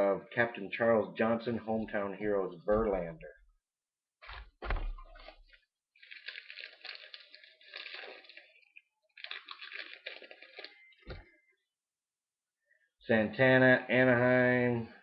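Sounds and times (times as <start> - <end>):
short thump: 4.3 - 5.1
wrapper tearing and crinkling: 6.0 - 11.0.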